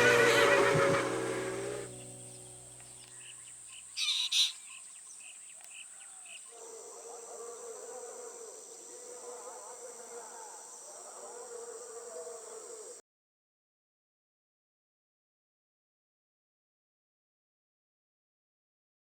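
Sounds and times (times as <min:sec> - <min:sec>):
loud bird call: 0:00.0 - 0:02.5
guitar music: 0:00.0 - 0:03.1.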